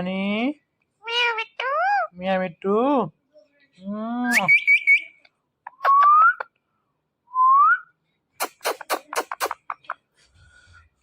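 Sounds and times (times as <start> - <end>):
parrot whistling and chirping: 4.3 - 6.5.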